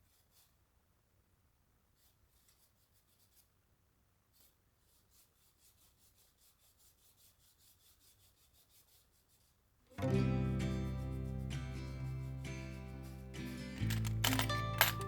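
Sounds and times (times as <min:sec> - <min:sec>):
quick rubbing strokes: 0:00.0 - 0:00.6, 0:01.9 - 0:03.6, 0:04.3 - 0:09.7.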